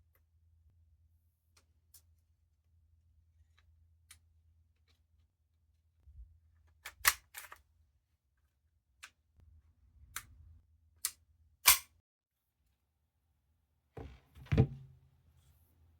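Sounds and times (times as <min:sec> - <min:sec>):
clicks of pistol parts: 0:06.8 - 0:07.6, 0:11.0 - 0:11.9.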